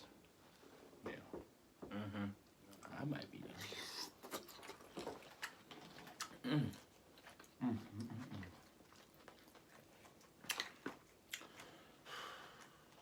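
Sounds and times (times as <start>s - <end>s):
low vocal hum: 1.8s - 2.4s, 7.6s - 8.6s
person chewing: 3.6s - 13.0s.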